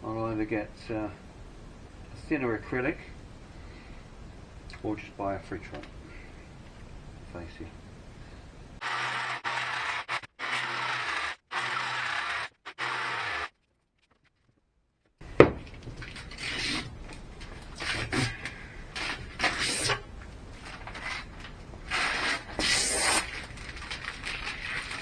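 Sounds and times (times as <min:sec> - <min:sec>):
scraping and rubbing: 0:08.8 - 0:13.5, 0:15.2 - 0:25.0.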